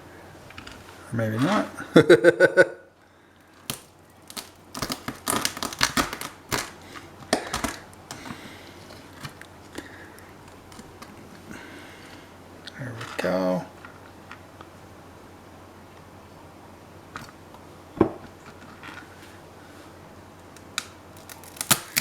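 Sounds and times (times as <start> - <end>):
blade cracking through shell: 3.6 - 8.3, 20.5 - 22.0.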